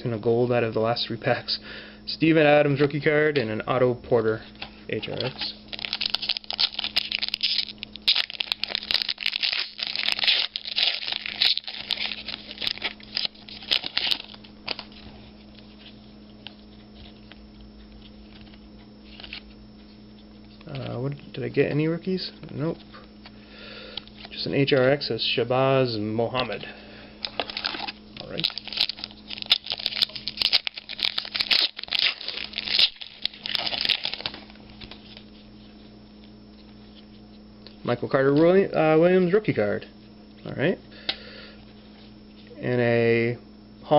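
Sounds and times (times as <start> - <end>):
faint steady hum: 0.0 - 43.9
cards rustling: 4.4 - 17.4, 18.0 - 21.0, 27.2 - 37.2
foil wrapper crinkling and tearing: 5.0 - 17.4, 27.2 - 35.4.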